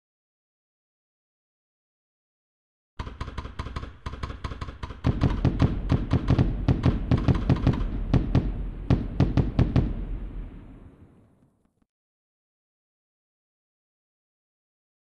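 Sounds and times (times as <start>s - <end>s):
fireworks cracking and popping: 4.1s - 11.4s.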